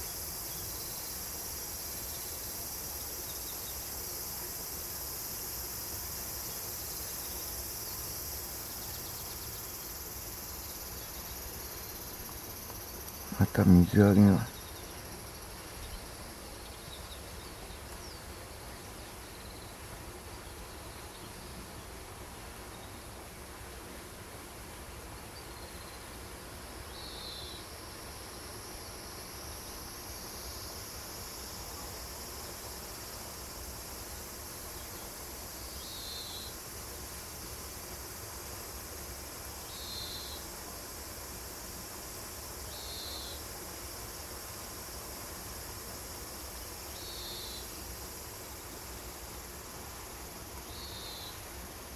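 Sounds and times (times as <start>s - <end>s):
insects singing: 0.0s - 17.2s.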